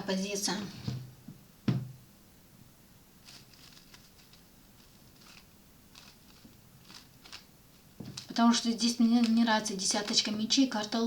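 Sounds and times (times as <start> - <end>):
faint short rustles: 3.2 - 8.3.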